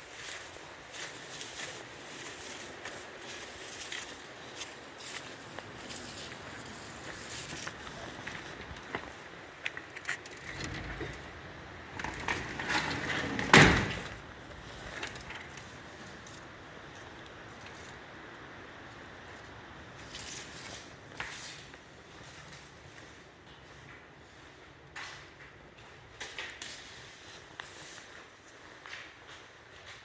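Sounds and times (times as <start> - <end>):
footsteps crunching on path: 0.0 - 10.4.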